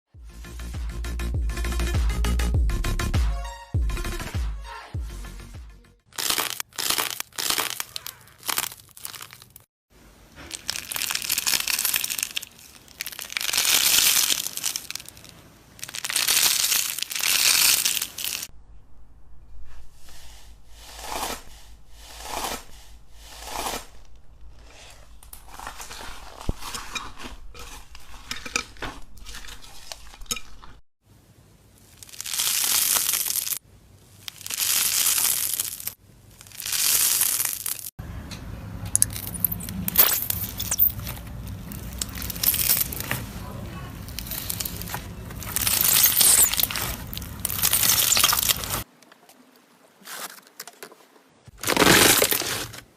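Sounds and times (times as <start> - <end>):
hands squeezing slime: 6.2 - 9.6, 10.5 - 18.5, 32.0 - 33.6, 34.2 - 37.9, 44.1 - 48.8.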